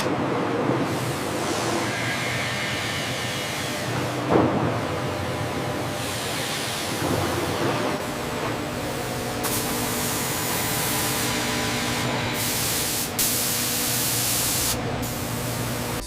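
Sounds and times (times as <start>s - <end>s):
low machine hum: 0.1s - 16.0s
steady hiss of spraying: 8.7s - 16.0s.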